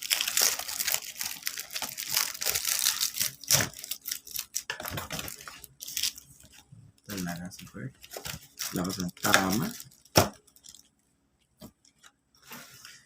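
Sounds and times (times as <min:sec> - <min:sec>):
packaging crinkling and tearing: 0:00.0 - 0:06.2, 0:07.1 - 0:10.9.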